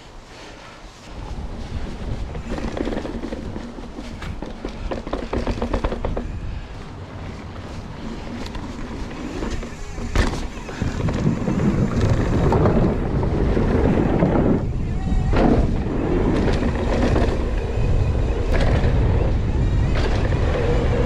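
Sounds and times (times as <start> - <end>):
bike tyre rumble and rattling: 0.0 - 21.0
wind buffeting microphone: 1.1 - 21.0.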